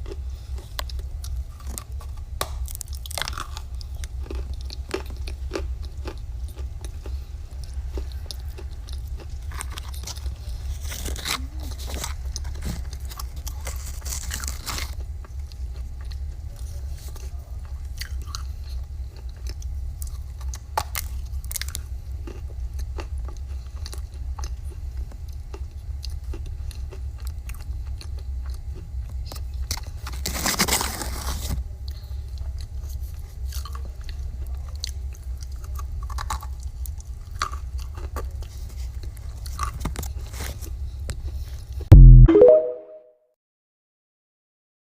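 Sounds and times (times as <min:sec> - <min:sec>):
crunchy chewing of dry clay: 0:00.0 - 0:41.9
low hum: 0:41.9 - 0:43.0.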